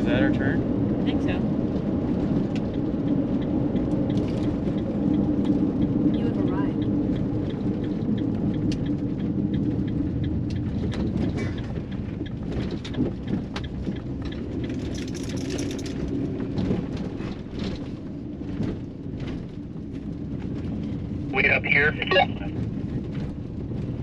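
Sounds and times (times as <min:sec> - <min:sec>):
road and engine rumble: 0:00.0 - 0:24.0
small clicks and rattles: 0:02.3 - 0:18.0.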